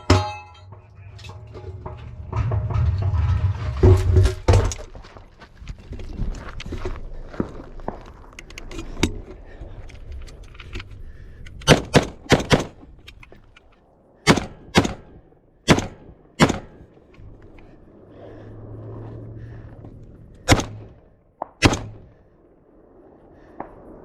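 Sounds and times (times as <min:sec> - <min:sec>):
gunshots: 0:11.6 - 0:12.8, 0:14.2 - 0:16.8, 0:20.4 - 0:22.2.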